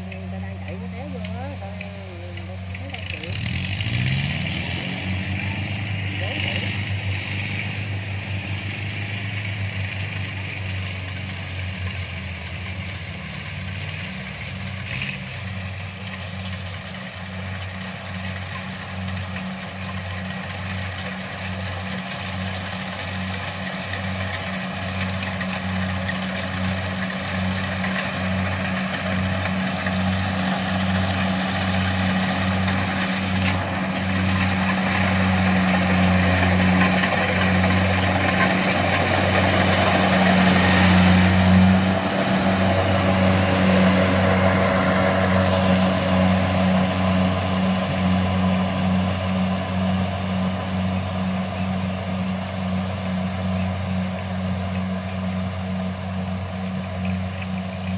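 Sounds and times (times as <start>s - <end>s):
combine harvester engine hum: 0.0s - 57.9s.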